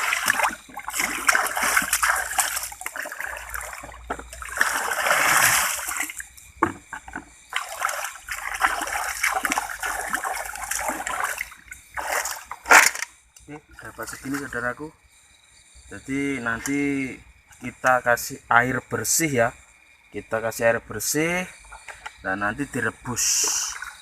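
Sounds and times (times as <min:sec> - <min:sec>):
water splashing and sloshing: 0:00.0 - 0:14.6, 0:23.0 - 0:24.0.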